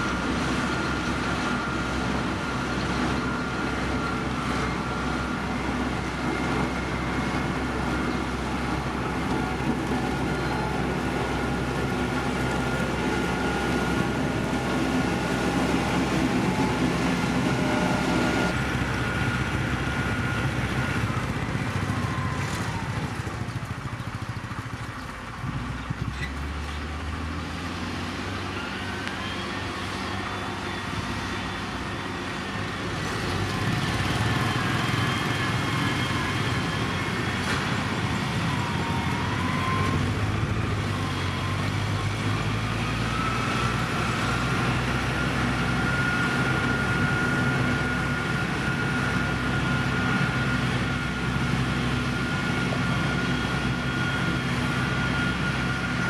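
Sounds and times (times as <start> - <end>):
high whine: 0.0 - 23.0
diesel engine under load: 0.0 - 56.0.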